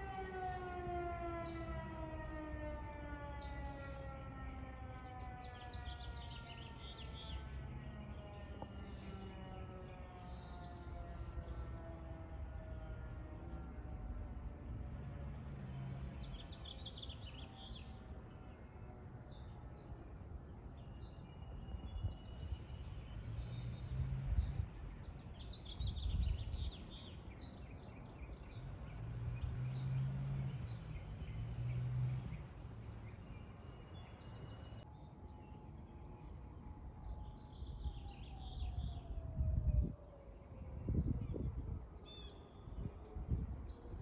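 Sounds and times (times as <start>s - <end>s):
fire siren winding down: 0.0s - 15.4s, 35.7s - 41.8s.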